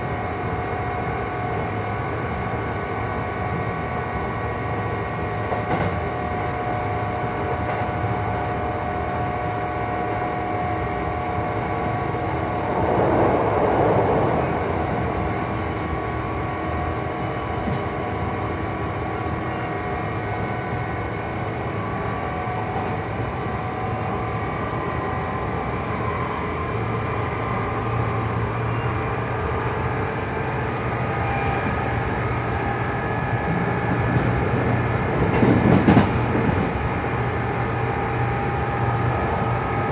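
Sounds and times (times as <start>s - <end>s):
rush of noise: 11.0s - 17.5s.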